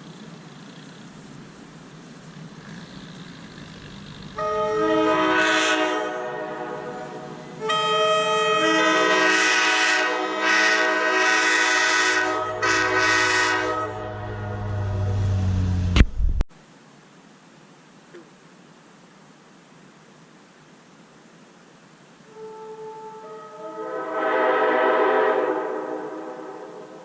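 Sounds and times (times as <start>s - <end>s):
multi-chime air horn blasts: 4.4s - 14.9s, 22.3s - 26.4s.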